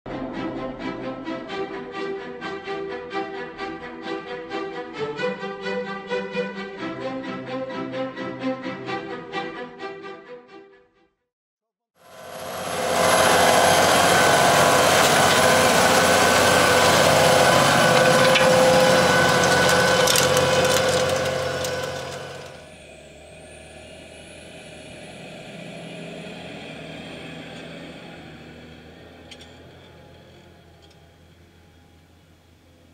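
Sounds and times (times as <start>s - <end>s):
tractor diesel engine whining: 12.0s - 32.9s.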